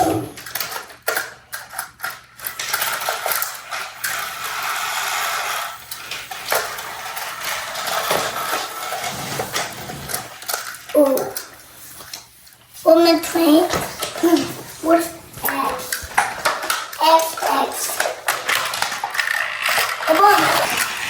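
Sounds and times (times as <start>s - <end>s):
plastic toy train clicking and rattling: 0.0s - 12.3s, 12.9s - 21.0s
steady mechanical rattle: 18.0s - 21.0s.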